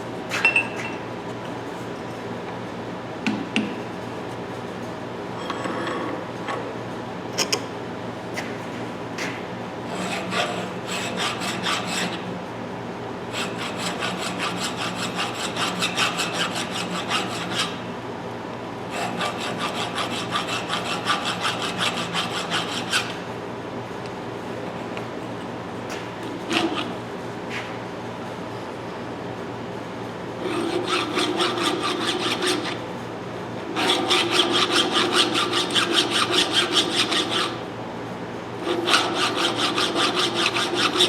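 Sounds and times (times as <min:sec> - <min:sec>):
file scraping on metal: 0:09.2 - 0:12.2, 0:13.4 - 0:17.9, 0:18.9 - 0:23.2, 0:26.4 - 0:27.0, 0:30.4 - 0:32.8, 0:33.8 - 0:37.6, 0:38.6 - 0:41.0.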